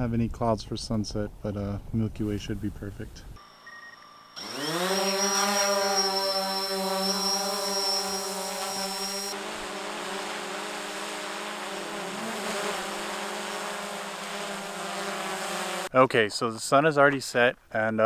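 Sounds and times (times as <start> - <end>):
high whine: 3.4 - 9.4
drone propellers buzzing: 4.3 - 15.9.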